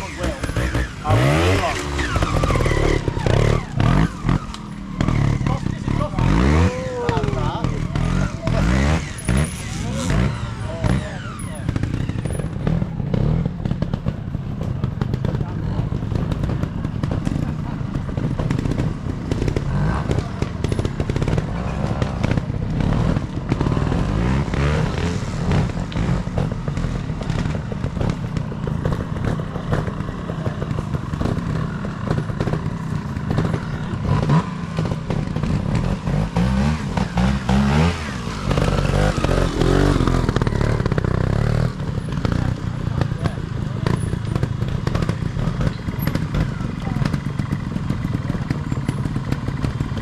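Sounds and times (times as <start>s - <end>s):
motorcycle engine revving: 0.0s - 50.0s
sharp clicks and clatter: 0.0s - 50.0s.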